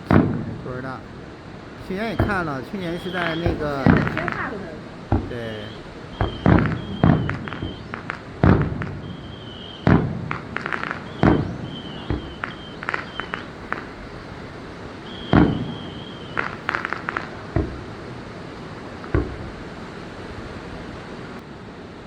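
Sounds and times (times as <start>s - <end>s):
firework shells booming: 0.0s - 19.8s
firework whistles: 0.0s - 20.1s
firework crackling: 0.0s - 21.4s.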